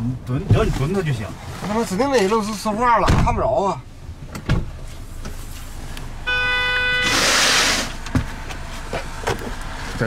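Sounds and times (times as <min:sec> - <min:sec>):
vehicle horn toot: 0:06.2 - 0:07.7
loud hissing burst: 0:07.1 - 0:08.0.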